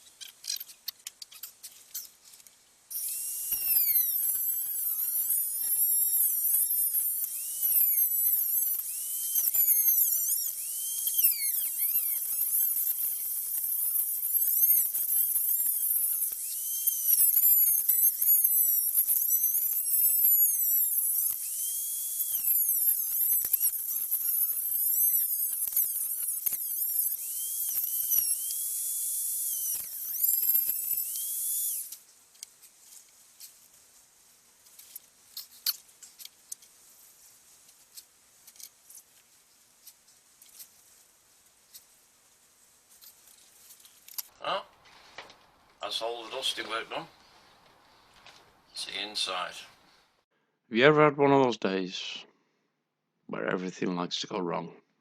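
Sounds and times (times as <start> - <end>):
high-speed rotary tool whining: 2.9 - 32.0.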